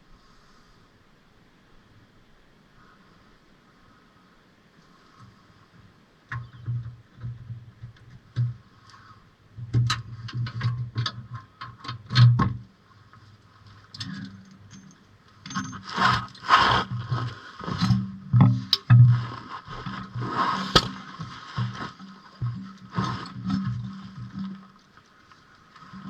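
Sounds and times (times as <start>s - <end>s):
metallic clinks of hand tools: 14.1s - 16.0s.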